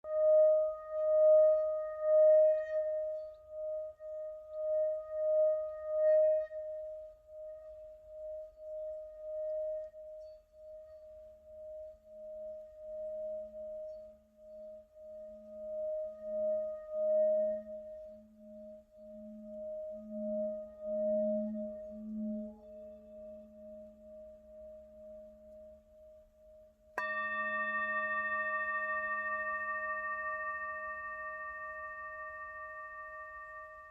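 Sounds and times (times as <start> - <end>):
low ringing tone: 0.0 - 33.9
high ringing tone: 27.0 - 33.9.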